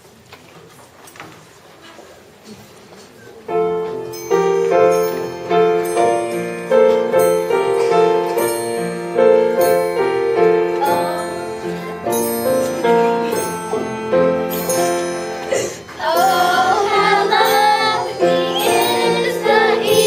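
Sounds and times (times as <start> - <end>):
struck ringing notes: 3.9 - 20.0.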